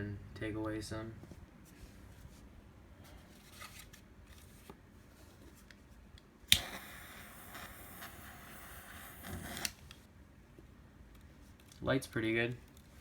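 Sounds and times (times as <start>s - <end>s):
lighter ignition click: 6.5s - 8.2s
torch flame hissing: 6.5s - 9.8s.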